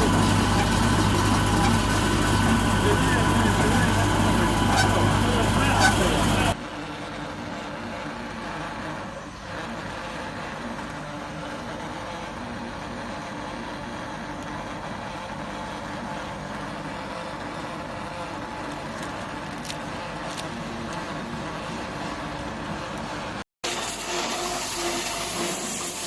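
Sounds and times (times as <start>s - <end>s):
low motor hum: 0.0s - 6.6s
milling machine running: 0.0s - 6.6s, 20.7s - 26.0s.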